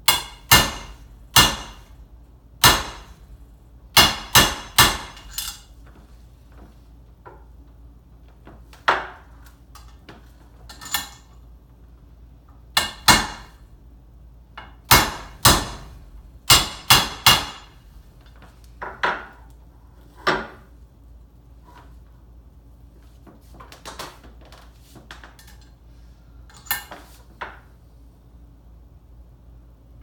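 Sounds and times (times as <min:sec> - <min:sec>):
hammer tapping on metal: 0:00.0 - 0:01.9, 0:02.6 - 0:03.1, 0:04.0 - 0:05.6, 0:16.5 - 0:17.7.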